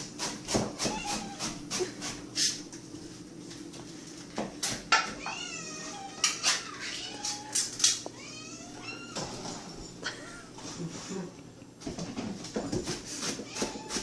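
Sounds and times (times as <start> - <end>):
cats meowing: 0.8 - 1.6, 5.0 - 9.5, 13.4 - 14.0.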